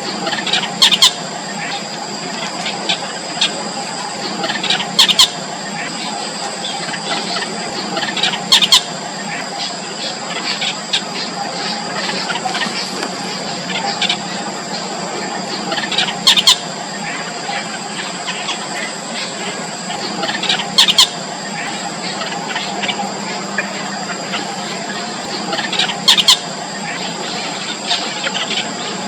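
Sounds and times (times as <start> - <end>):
nestlings squeaky begging calls: 0.0 - 29.0
steady background hum: 0.0 - 29.0.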